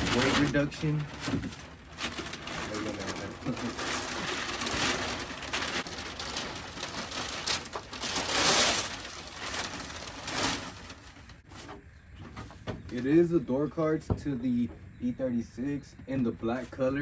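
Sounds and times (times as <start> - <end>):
packaging rustling and crinkling: 0.0 - 11.7.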